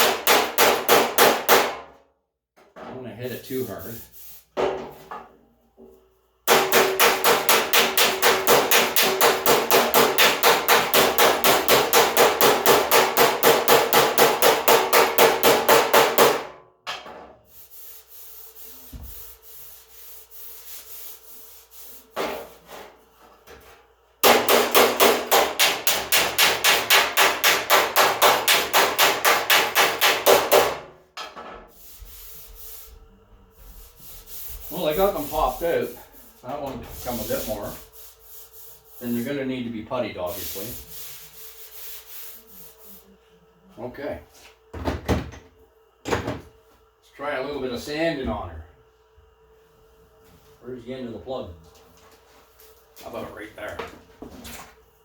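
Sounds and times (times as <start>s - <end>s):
hammer tapping on sheet steel: 0.0s - 1.8s, 6.5s - 17.0s, 24.2s - 31.4s.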